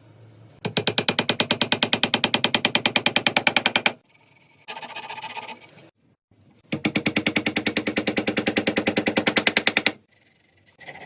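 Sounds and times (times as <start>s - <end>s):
power tool hammering rapidly: 0.7s - 4.0s, 6.7s - 10.0s.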